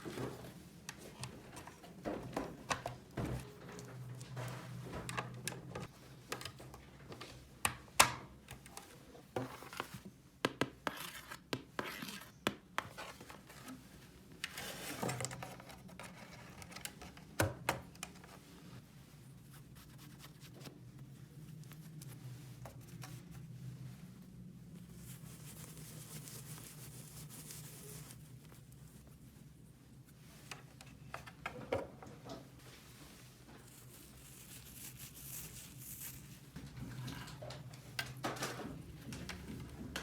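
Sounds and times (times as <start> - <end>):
scratching and rubbing: 33.6 - 36.5.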